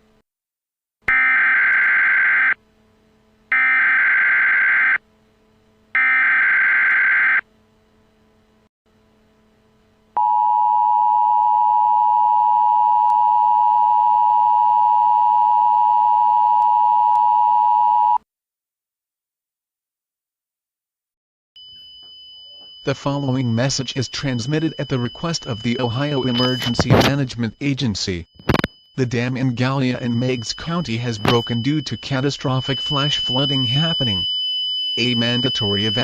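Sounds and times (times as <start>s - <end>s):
harsh dual tone alert: 3.5s - 5.0s, 21.6s - 36.0s.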